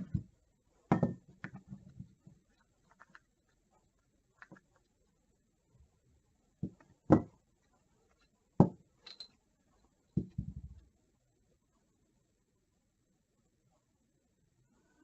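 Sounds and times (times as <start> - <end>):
metal parts knocking and clinking: 9.0 - 9.4.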